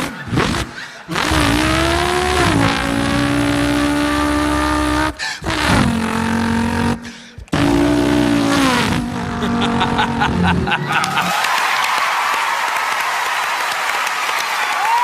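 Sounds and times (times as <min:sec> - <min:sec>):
person imitating car engine: 0:00.0 - 0:11.3.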